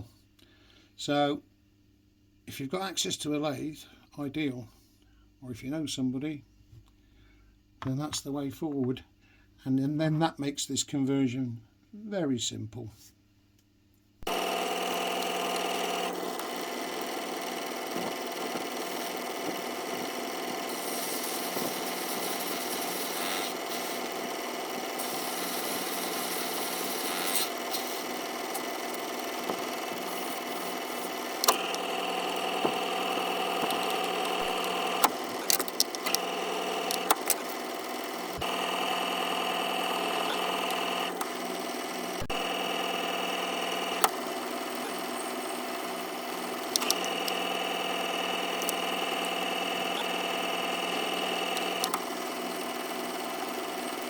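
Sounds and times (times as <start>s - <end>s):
small lathe humming: 14.2s - 54.0s
sharp clicks: 28.5s - 37.6s, 43.8s - 44.2s, 46.6s - 49.2s, 51.1s - 52.1s.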